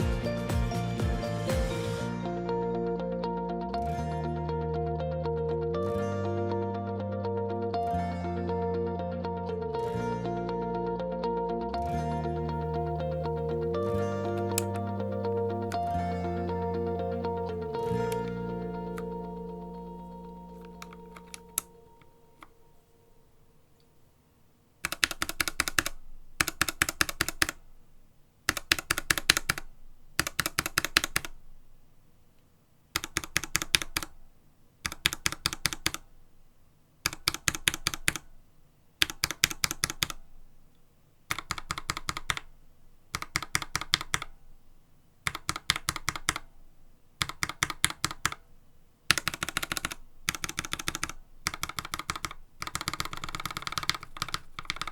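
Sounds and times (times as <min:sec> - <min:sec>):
music: 0:00.0 - 0:22.5
mechanical keyboard typing: 0:12.5 - 0:22.6, 0:24.8 - 0:27.6, 0:28.5 - 0:31.4, 0:33.0 - 0:34.2, 0:34.8 - 0:36.1, 0:37.0 - 0:38.3, 0:39.0 - 0:40.3, 0:41.3 - 0:42.5, 0:43.1 - 0:44.4, 0:45.2 - 0:46.5, 0:47.2 - 0:48.4, 0:49.1 - 0:54.9.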